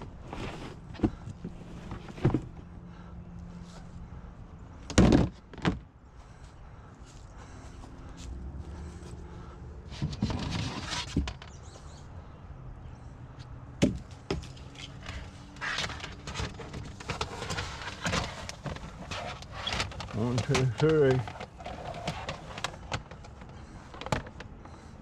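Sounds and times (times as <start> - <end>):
plastic totes knocking and scraping: 0.0 - 2.7, 4.8 - 5.9, 9.9 - 11.5, 13.8 - 24.9
rustling and bumping: 0.0 - 2.7, 13.8 - 24.8.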